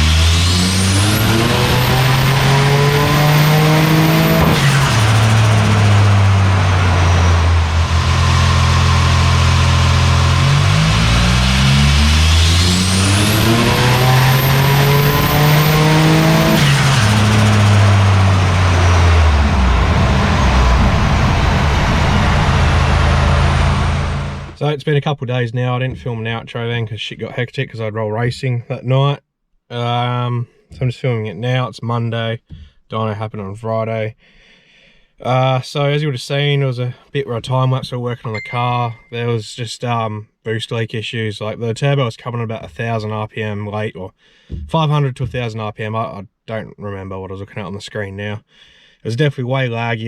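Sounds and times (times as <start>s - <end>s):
car engine revving hard: 0.0s - 24.6s.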